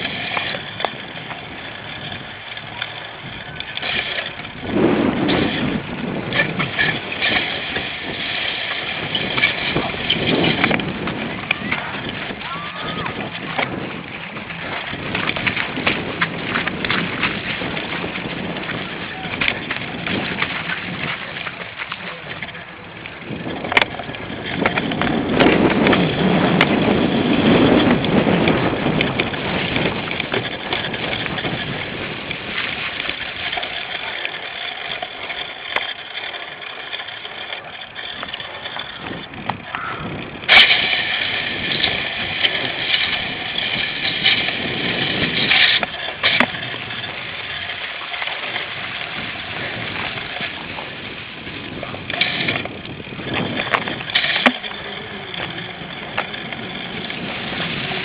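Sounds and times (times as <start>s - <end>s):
wind on microphone: 0.0s - 36.6s, 37.4s - 58.0s
bike rattling and clicking: 0.0s - 58.0s
high ringing tones: 39.6s - 42.0s.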